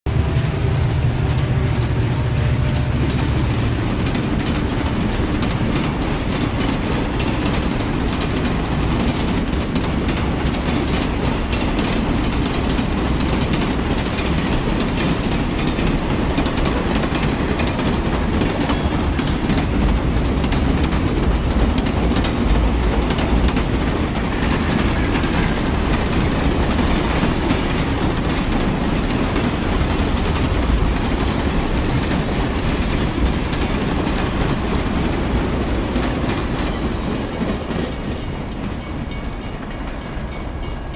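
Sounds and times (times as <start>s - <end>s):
train rumbling on rails: 0.1s - 40.9s.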